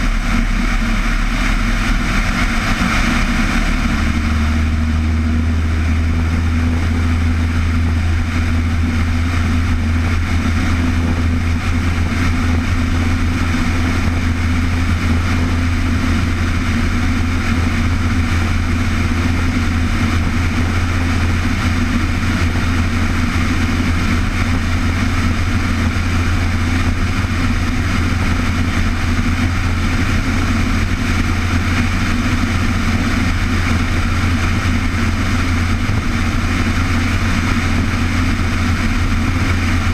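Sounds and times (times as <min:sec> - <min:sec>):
engine drone with low hum: 0:00.0 - 0:39.9.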